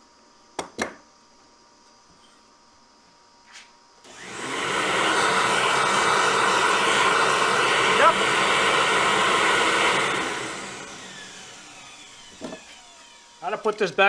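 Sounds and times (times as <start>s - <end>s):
electric motor spinning: 4.0s - 14.0s.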